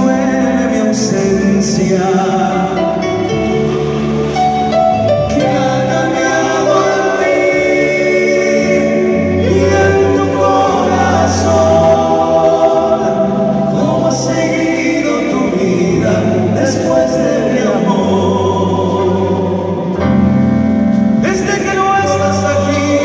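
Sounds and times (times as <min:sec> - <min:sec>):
voices singing together: 0:00.0 - 0:20.2, 0:21.2 - 0:23.0
sustained bass notes: 0:00.0 - 0:23.0.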